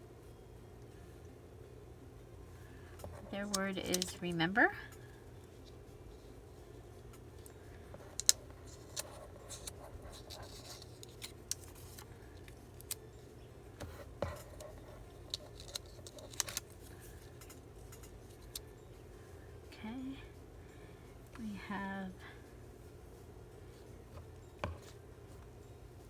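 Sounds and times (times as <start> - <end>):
paper pieces clicking and tapping: 3.4 - 4.2, 8.1 - 12.0, 14.2 - 16.8
paper rustling: 8.2 - 12.1.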